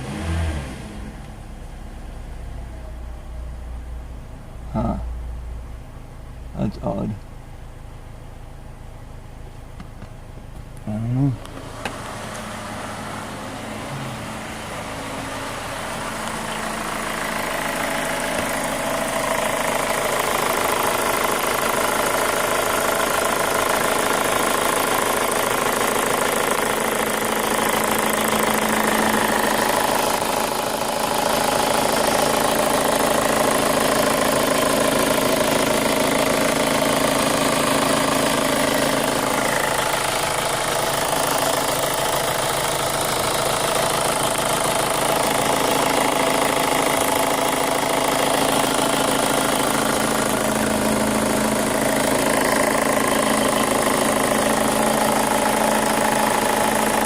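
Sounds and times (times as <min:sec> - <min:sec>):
car engine idling: 0:00.0 - 0:57.0
engine knocking: 0:16.5 - 0:57.0.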